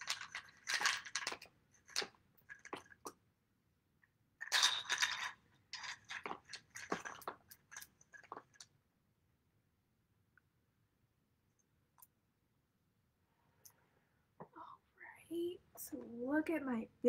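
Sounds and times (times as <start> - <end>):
ice cubes clinking into water: 0.0 - 3.1, 4.4 - 8.7.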